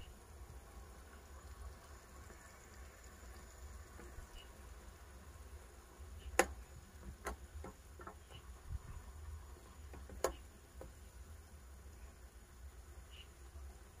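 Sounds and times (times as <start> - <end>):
low steady rumble: 0.0 - 14.0
sharp clicks and knocks: 6.3 - 8.4, 9.9 - 11.0.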